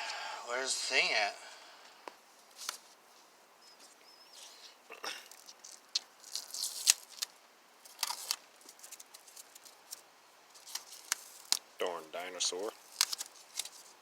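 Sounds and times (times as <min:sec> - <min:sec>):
hands handling tools and parts: 0:05.3 - 0:14.0.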